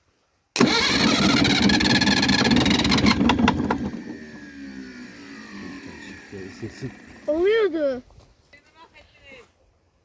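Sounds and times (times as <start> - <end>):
tractor diesel engine starting: 0.6 - 7.7
sharp engine knocks: 1.5 - 4.2.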